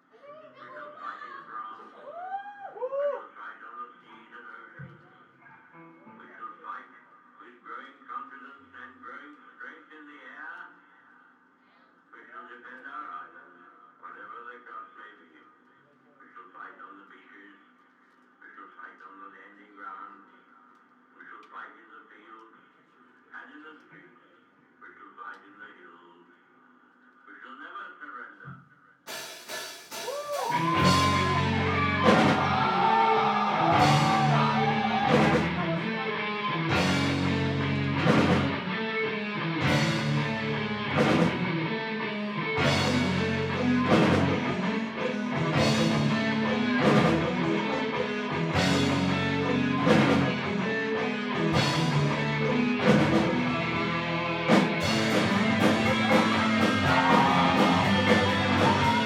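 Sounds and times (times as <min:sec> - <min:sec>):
rock band playing live: 0:29.2 - 0:59.0.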